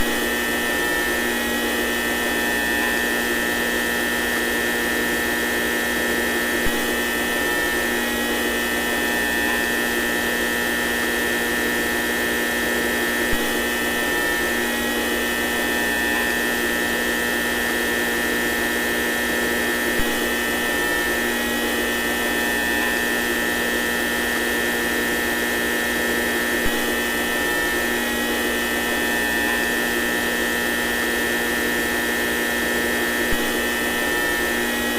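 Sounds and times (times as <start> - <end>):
high whine: 33.2 - 34.9.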